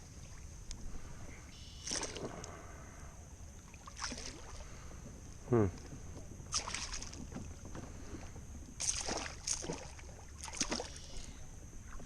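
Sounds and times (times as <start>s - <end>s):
low wind rumble: 0.0s - 10.4s
water splashing: 1.8s - 2.5s, 3.6s - 4.8s, 5.7s - 12.0s.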